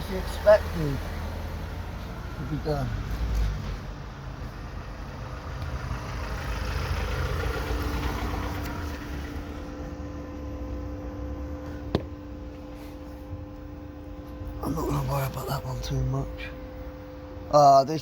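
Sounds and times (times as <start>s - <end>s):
vehicle engine rumbling: 0.0s - 18.0s
steady hum: 8.4s - 18.0s.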